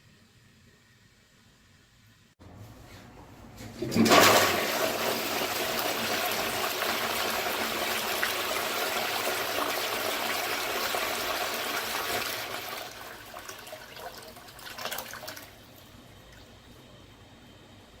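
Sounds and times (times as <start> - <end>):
toilet flushing: 3.6 - 17.0.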